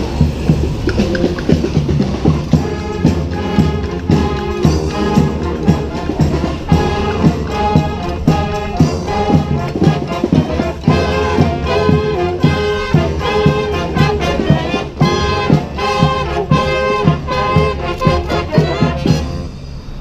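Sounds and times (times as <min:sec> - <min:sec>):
brass band playing: 0:00.0 - 0:19.7.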